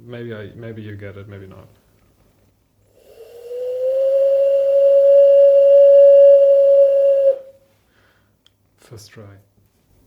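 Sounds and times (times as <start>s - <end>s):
breathy air noise: 2.8s - 8.4s
bird-call whistle note: 3.6s - 7.6s.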